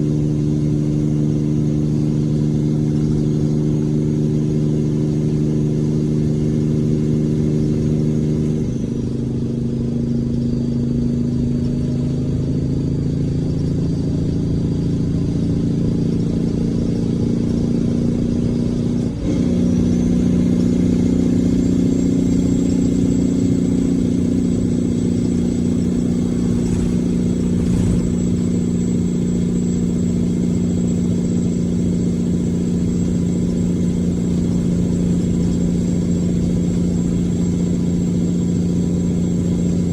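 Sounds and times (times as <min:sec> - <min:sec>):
diesel truck engine braking: 0:00.0 - 0:39.9
thin high whine: 0:22.9 - 0:37.7.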